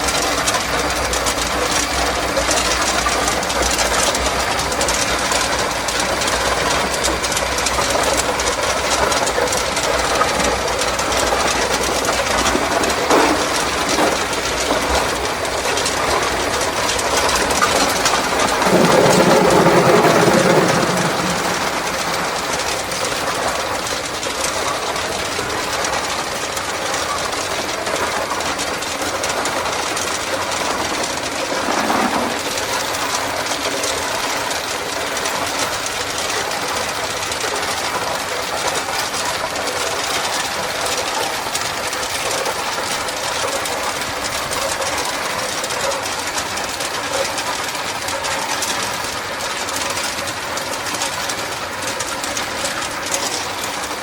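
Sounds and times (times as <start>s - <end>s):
ice tubes clattering: 0.0s - 54.0s
compressor running: 9.2s - 26.4s.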